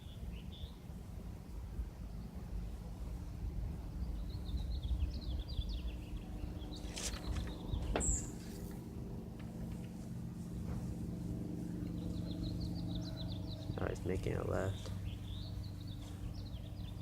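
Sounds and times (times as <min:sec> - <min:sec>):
propeller aircraft engine drone: 0:00.0 - 0:17.0
small birds chirping: 0:02.1 - 0:08.9, 0:09.5 - 0:17.0.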